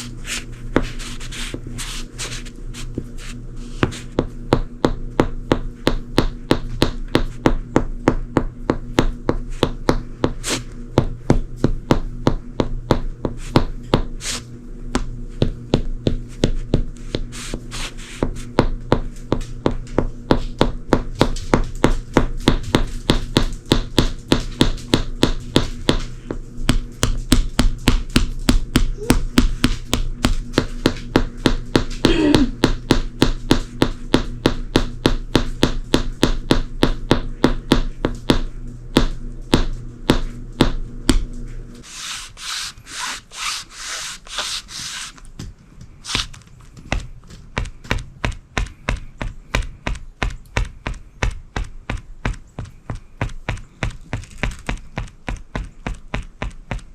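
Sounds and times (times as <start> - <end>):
footsteps on hardwood floor: 0.0 - 14.1, 14.9 - 56.9
shoe squeak: 41.9 - 45.2, 46.0 - 46.4.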